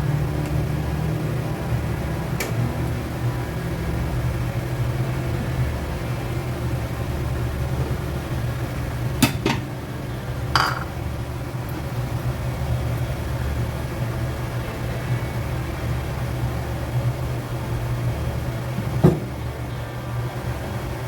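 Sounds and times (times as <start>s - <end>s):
steady low hum: 0.0s - 21.0s
kitchenware clinking: 9.2s - 9.8s, 10.6s - 11.0s.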